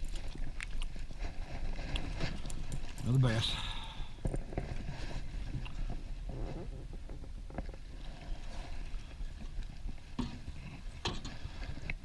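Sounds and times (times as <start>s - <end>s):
wind rumble on microphone: 4.0s - 12.0s.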